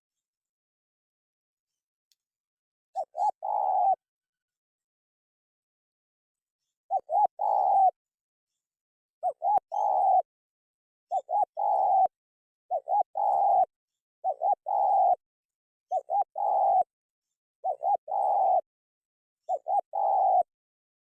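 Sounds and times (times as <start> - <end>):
dove cooing: 3.0 - 4.0, 6.9 - 8.0, 9.2 - 10.3, 11.1 - 15.2, 15.9 - 16.9, 17.6 - 18.7, 19.5 - 20.5.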